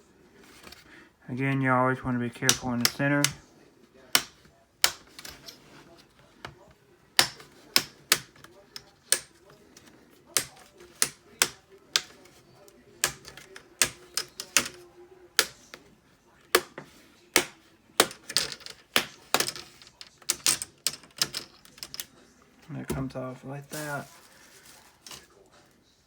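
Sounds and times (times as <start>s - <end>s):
plastic clips snapping: 4.1s - 5.6s, 7.2s - 12.4s, 13.0s - 14.8s.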